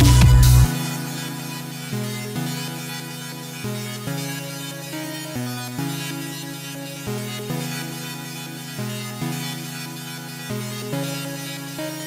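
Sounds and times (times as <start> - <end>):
heavy bass line: 0.0 - 1.3
electronic dance music: 0.0 - 12.0.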